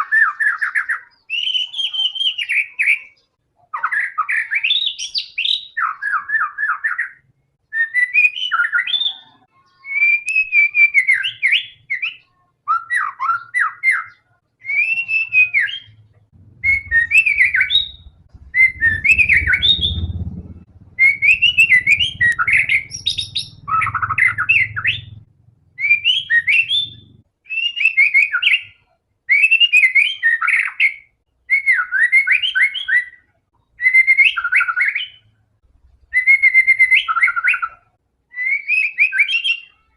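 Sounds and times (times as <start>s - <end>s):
songbird singing: 0.0s - 39.9s
low rumble: 15.9s - 27.2s.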